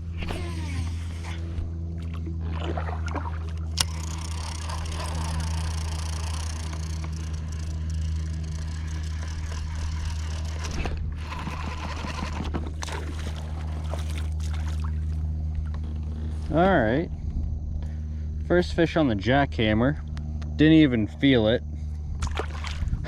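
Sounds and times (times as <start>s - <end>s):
water gurgling and sloshing: 0.0s - 16.6s, 22.0s - 23.0s
steady low hum: 0.0s - 23.0s
water splashing: 2.0s - 3.8s, 12.7s - 15.2s, 22.2s - 23.0s.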